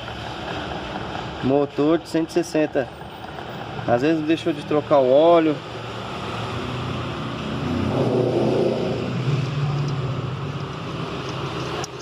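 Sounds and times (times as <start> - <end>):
traffic din: 0.0 - 12.0
passing vehicle engine hum: 3.0 - 12.0.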